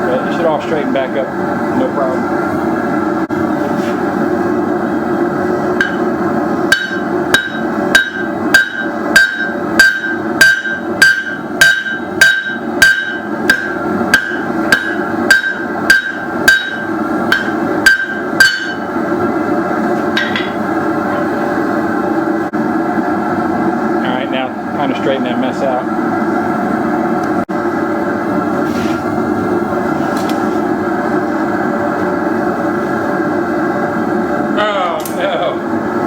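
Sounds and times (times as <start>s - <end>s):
hammer striking steel on anvil: 5.8s - 6.1s, 6.7s - 18.9s, 20.1s - 20.6s.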